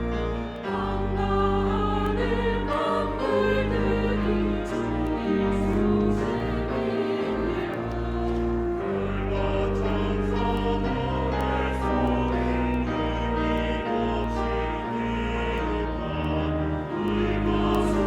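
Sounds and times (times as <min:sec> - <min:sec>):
church choir singing a hymn: 0:00.0 - 0:18.0
instrumental accompaniment: 0:00.0 - 0:18.0.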